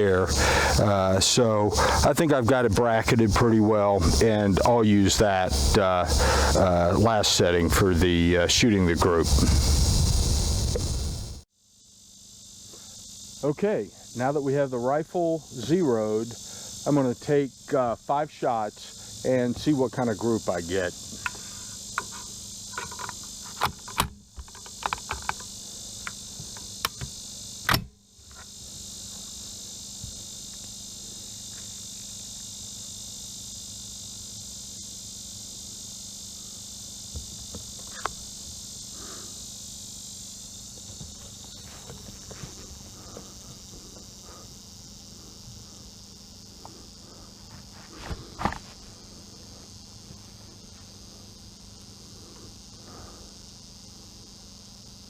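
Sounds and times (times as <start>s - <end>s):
insects chirring: 0.0s - 55.0s
small clicks and knocks: 21.2s - 28.5s.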